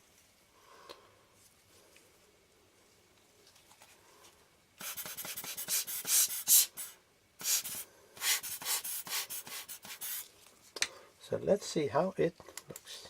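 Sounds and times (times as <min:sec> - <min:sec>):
tissue wiping glass lens: 0:04.8 - 0:10.3.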